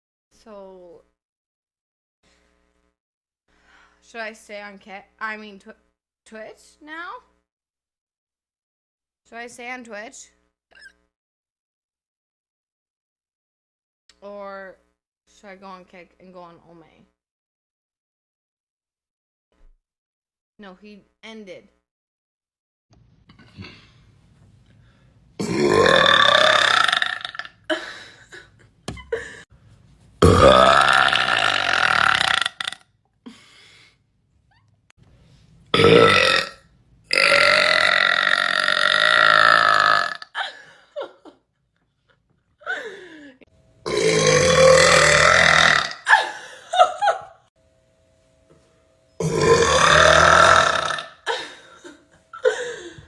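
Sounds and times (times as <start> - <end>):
woman burping loudly: 25.4 - 27.8, 30.2 - 32.8, 35.7 - 40.6, 43.8 - 46.9, 49.2 - 53.0.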